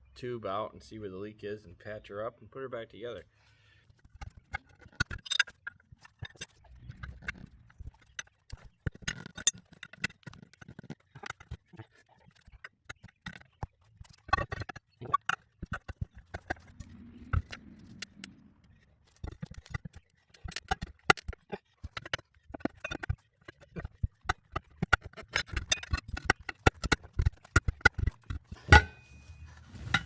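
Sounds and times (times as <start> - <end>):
metal tools clinking on wheel rim: 28.5 - 30.0
ringing metal clang: 28.6 - 29.3.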